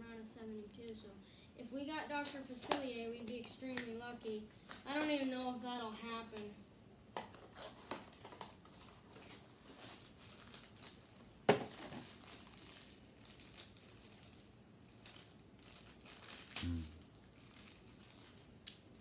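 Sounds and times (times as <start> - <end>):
package crinkling and rustling: 7.2 - 18.9.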